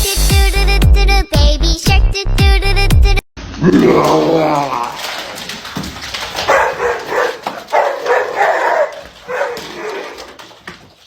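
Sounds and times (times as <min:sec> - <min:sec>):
dog wavering calls: 0:06.4 - 0:10.6.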